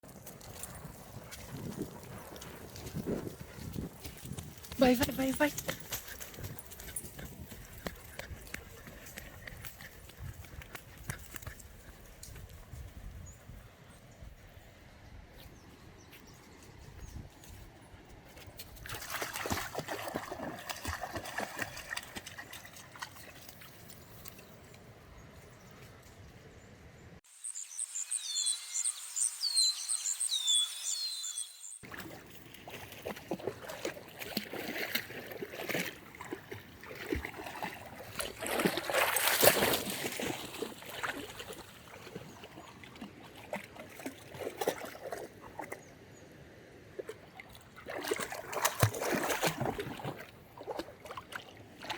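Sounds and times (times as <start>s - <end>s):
water trickling and splashing: 0.0s - 13.6s, 16.1s - 24.8s, 31.8s - 46.0s, 46.9s - 51.9s
high bird chirps falling: 27.4s - 31.8s.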